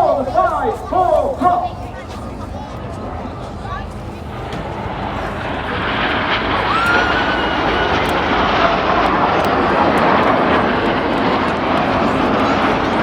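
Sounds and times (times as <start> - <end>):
jet engines passing overhead: 0.0 - 13.0
faint gliding whistle: 6.6 - 8.0.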